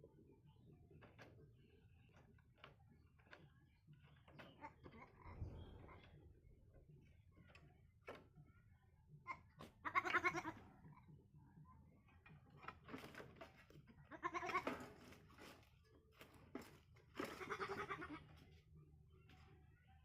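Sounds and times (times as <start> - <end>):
baby goat bleating: 9.8 - 10.6, 14.1 - 14.6, 17.2 - 18.3.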